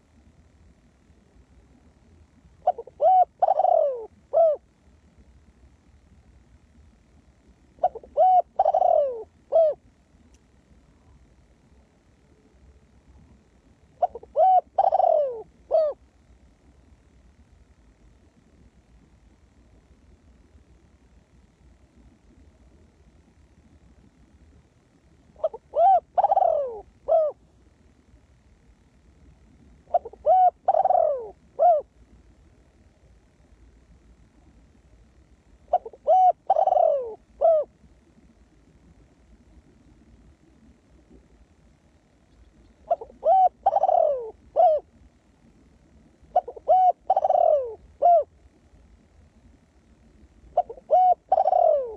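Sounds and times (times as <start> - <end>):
dove cooing: 2.5 - 4.8, 7.7 - 9.9, 13.9 - 16.1, 25.3 - 27.5, 29.8 - 32.0, 35.6 - 37.8, 42.4 - 45.0, 46.2 - 48.4, 50.5 - 51.9.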